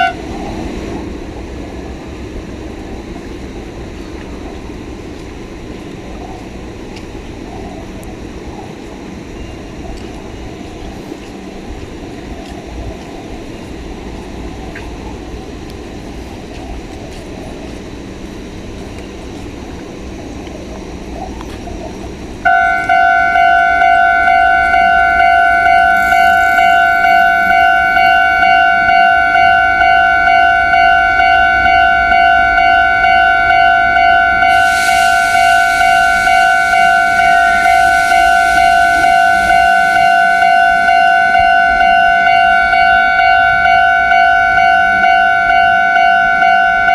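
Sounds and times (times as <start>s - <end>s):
level crossing alarm bell: 0.0s - 0.2s, 22.4s - 46.9s
rushing hiss: 24.9s - 28.4s, 34.4s - 41.3s.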